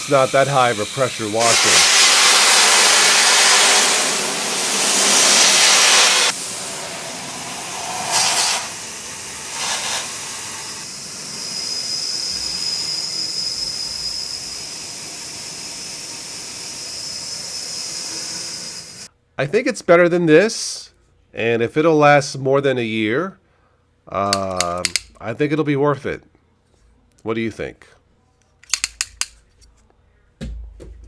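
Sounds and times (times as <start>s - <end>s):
power washer spraying water jet: 0.0s - 19.1s.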